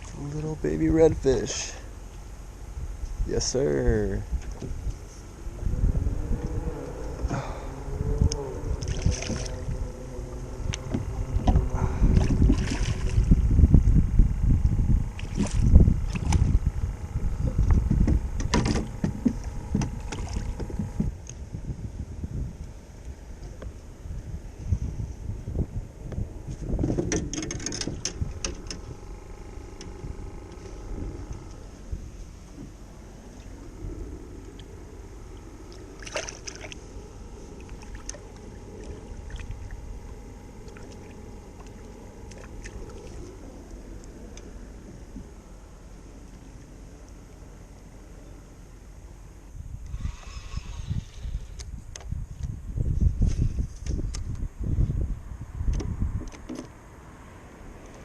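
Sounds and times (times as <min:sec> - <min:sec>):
water noise: 0:00.0 - 0:24.6, 0:25.2 - 0:51.9
boat hull rumbling and buffeting: 0:00.0 - 0:58.0
wind: 0:00.0 - 0:58.0.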